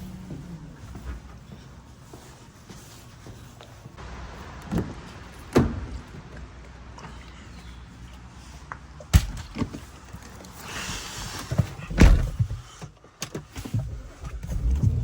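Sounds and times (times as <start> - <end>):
door thuds: 12.0 - 12.5.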